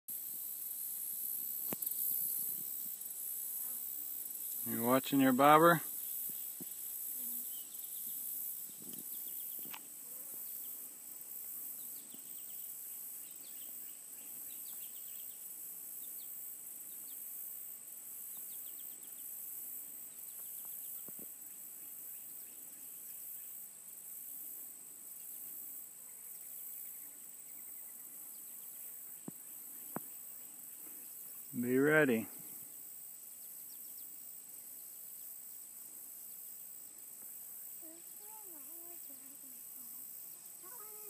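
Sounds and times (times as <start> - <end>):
insects chorus: 0.1 - 41.0
pulsing insect layer: 0.1 - 41.0.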